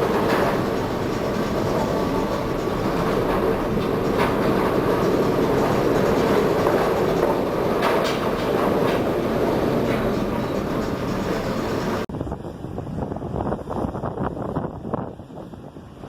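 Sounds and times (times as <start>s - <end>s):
rattling knocks: 0.0s - 12.0s
heavy ship rumble: 0.0s - 16.0s
wind gusting on microphone: 0.0s - 16.0s.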